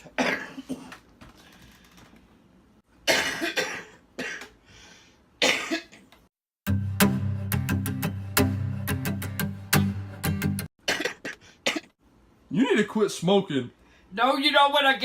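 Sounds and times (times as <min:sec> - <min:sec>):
woman coughing harshly: 0:00.0 - 0:01.0, 0:03.1 - 0:04.6, 0:05.4 - 0:06.0, 0:10.8 - 0:12.0.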